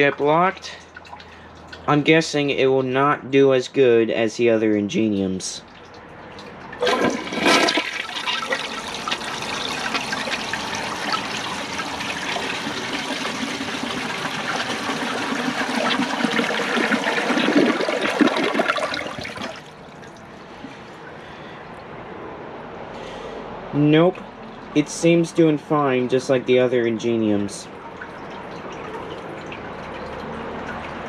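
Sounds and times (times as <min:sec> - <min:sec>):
rushing water: 0:05.6 - 0:20.3, 0:27.7 - 0:31.0
toilet bowl refilling: 0:05.8 - 0:20.2, 0:27.7 - 0:31.0
toilet flushing: 0:06.6 - 0:20.2.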